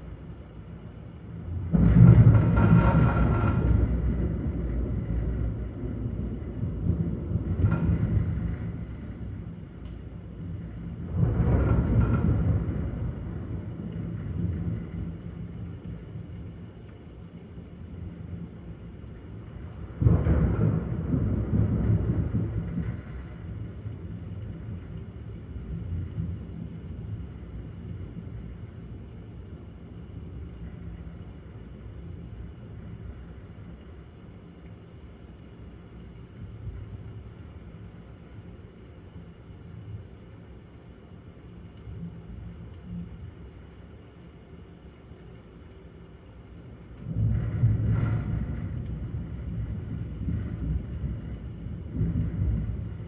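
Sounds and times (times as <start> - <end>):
thunder clap and rumble: 0.3 - 34.3, 46.4 - 53.0.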